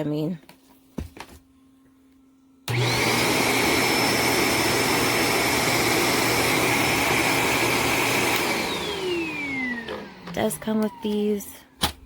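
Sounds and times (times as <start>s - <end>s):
vacuum cleaner running: 2.6s - 11.7s.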